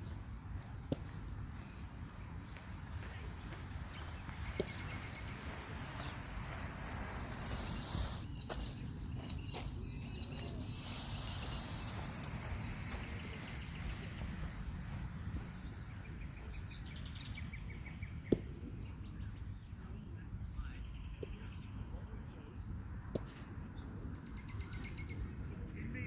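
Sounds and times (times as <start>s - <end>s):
small birds chirping: 0.0s - 25.3s
hand tool scratching over grass: 2.1s - 8.8s, 10.4s - 16.6s.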